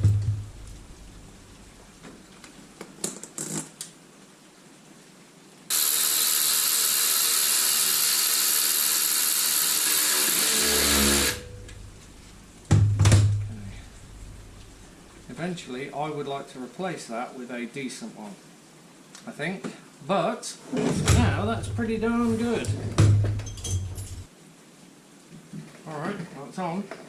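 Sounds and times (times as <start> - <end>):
power tool running: 5.7 - 11.8
low thump: 20.9 - 21.8.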